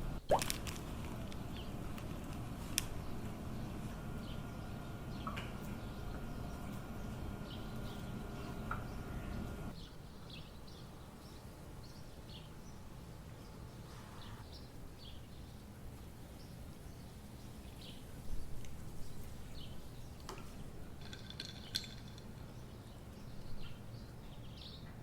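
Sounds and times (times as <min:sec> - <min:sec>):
low steady hum: 0:00.0 - 0:09.8
bird chirps: 0:02.9 - 0:11.4.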